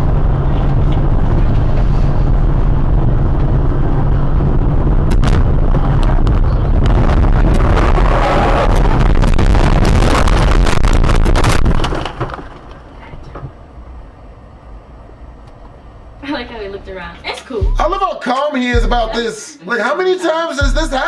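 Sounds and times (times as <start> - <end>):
car road rumble: 0.0 - 18.0
sharp bangs and cracks: 5.0 - 12.9.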